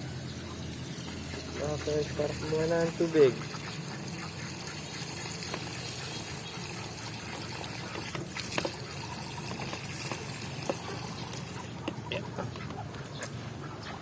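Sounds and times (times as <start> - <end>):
water filling a container: 1.2 - 11.8.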